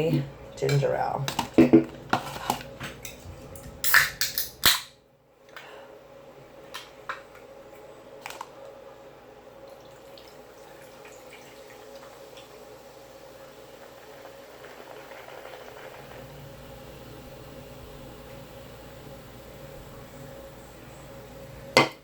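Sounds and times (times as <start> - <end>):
faint hum with thin tone: 0.0 - 22.0.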